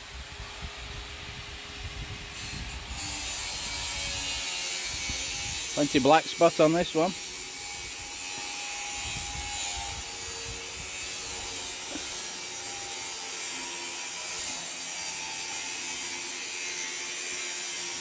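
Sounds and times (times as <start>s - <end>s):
power tool rasping: 2.4s - 18.0s.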